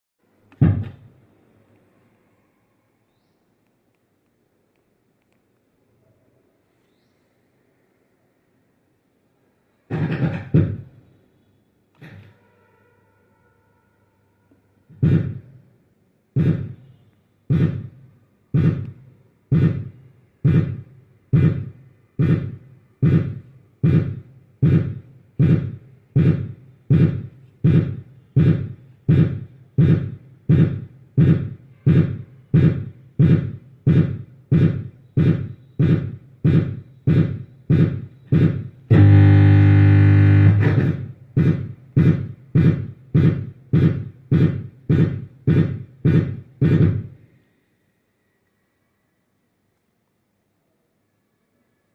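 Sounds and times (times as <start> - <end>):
electronic drum thuds: 0.6 - 1.2, 9.9 - 11.0, 14.9 - 15.6, 16.4 - 16.9, 17.5 - 47.2
loud steady tone: 14.4 - 15.6, 16.4 - 18.0, 18.6 - 47.2.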